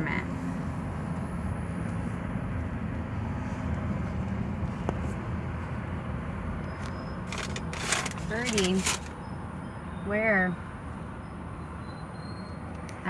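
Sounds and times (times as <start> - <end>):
car engine and road rumble: 0.0 - 13.0.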